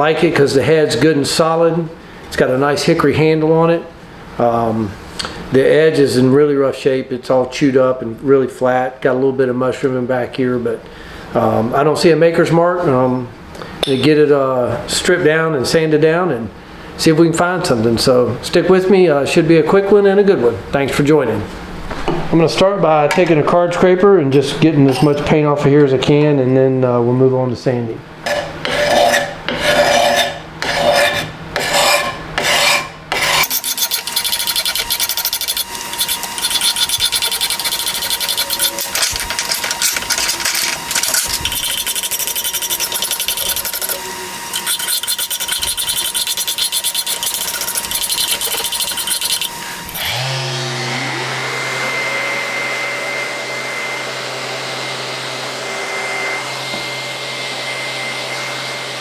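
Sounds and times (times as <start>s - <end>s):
scraper rasping on metal: 28.6s - 50.2s
power tool motor whine: 33.4s - 59.0s.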